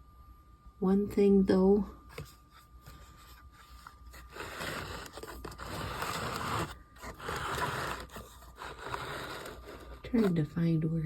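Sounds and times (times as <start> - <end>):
scraping and rustling: 2.1 - 10.6.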